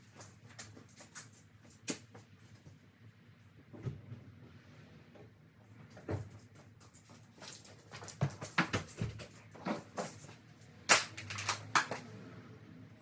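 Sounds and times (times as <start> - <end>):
hard objects knocking and clattering: 6.0 - 12.1.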